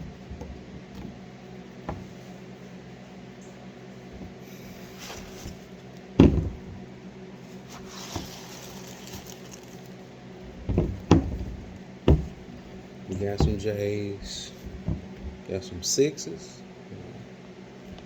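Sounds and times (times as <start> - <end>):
steady low hum: 0.0 - 18.0
objects knocking: 6.2 - 6.7, 10.5 - 15.4.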